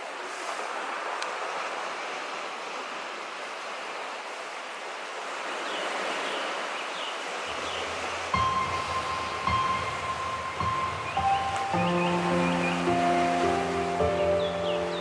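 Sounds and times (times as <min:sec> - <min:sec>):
sea waves washing on shore: 0:00.0 - 0:15.0
faint chirps: 0:07.5 - 0:15.0
soft music with low note: 0:07.8 - 0:15.0.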